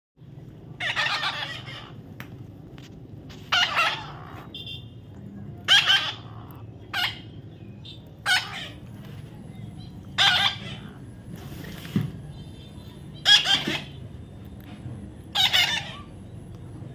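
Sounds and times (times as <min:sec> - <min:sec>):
parrot squawking: 0:00.8 - 0:02.0, 0:03.3 - 0:04.8, 0:05.6 - 0:09.0, 0:10.1 - 0:11.1, 0:13.1 - 0:14.0, 0:15.3 - 0:16.2.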